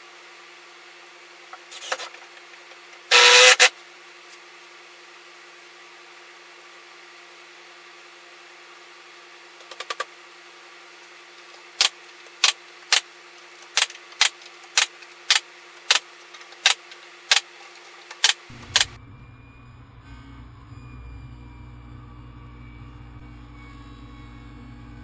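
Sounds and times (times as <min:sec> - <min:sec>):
steady low hum: 0:00.0 - 0:25.0
sharp clicks: 0:11.8 - 0:13.0, 0:13.6 - 0:19.0.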